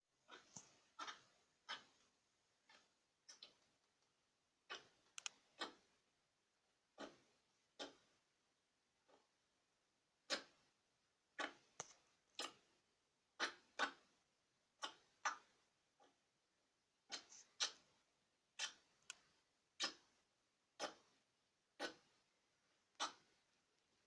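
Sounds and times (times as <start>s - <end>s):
television clicking: 4.7s - 5.8s.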